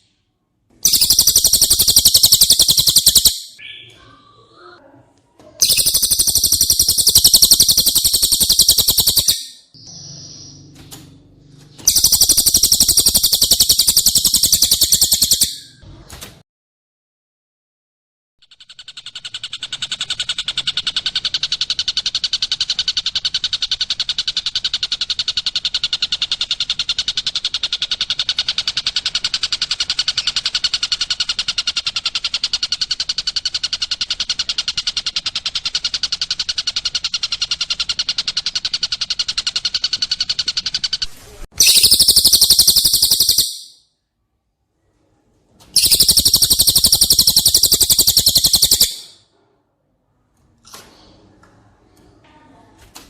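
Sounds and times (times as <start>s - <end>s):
bird trilling: 0.8s - 4.3s, 5.6s - 10.7s, 11.8s - 15.8s, 18.4s - 43.8s, 45.8s - 49.2s
harsh high rapid bird trill: 0.8s - 4.4s, 5.6s - 10.7s, 11.7s - 15.8s, 18.4s - 43.9s, 45.8s - 49.3s.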